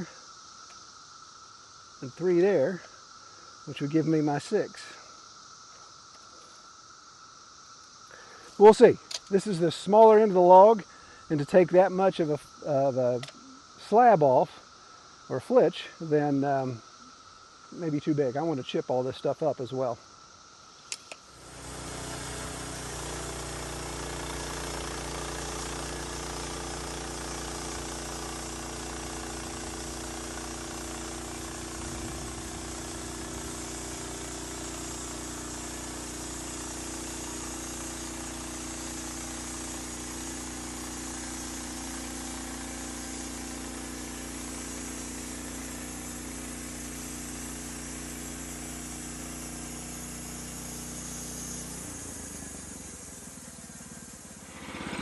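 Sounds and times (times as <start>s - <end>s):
sawmill engine running: 21.3s - 55.0s.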